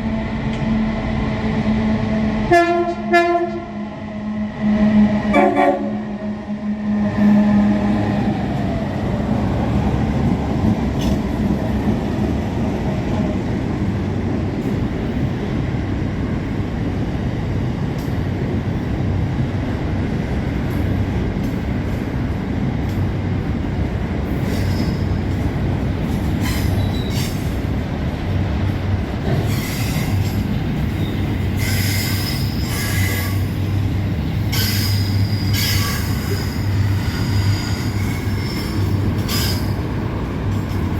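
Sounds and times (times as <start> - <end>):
train wheels rumbling on rail: 0.0 - 40.9
locomotive horn blast: 2.1 - 8.0
high wheel squeal: 31.0 - 33.5, 34.6 - 39.8.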